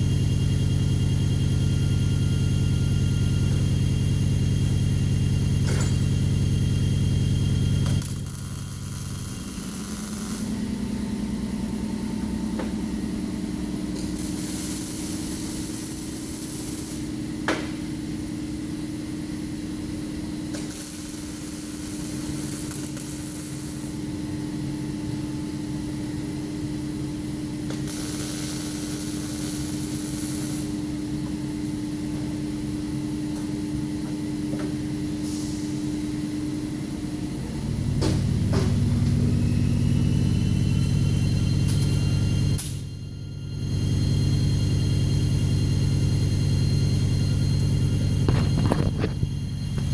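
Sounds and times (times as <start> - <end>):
deep loud hum: 0.0 - 49.9
steady machine hum: 0.0 - 49.9
welder arc sizzling: 4.6 - 11.6, 13.9 - 17.5, 20.5 - 24.3, 27.7 - 42.9.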